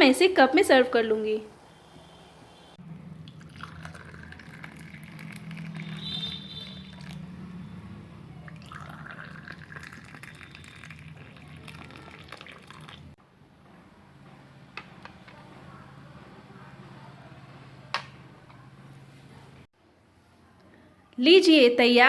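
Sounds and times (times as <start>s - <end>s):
tea pouring into a cup: 3.2s - 7.2s, 8.5s - 13.1s.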